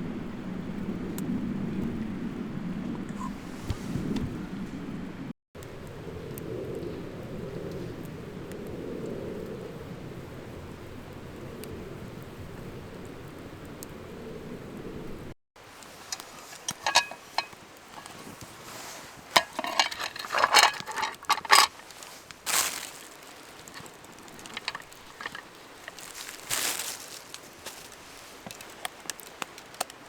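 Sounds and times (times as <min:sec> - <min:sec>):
objects clicking and clinking: 0:15.8 - 0:18.5, 0:19.3 - 0:27.1.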